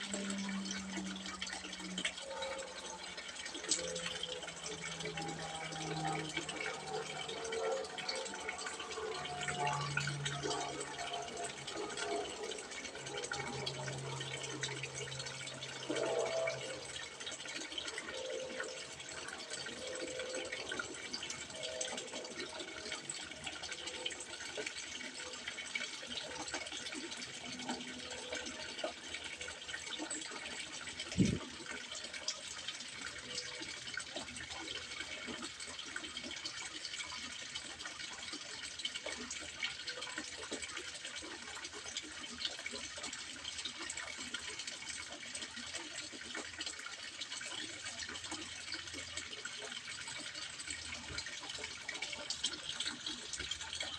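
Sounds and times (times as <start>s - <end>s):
low hum: 0.0s - 23.2s, 31.0s - 31.6s
water trickling into a pond: 0.0s - 53.9s.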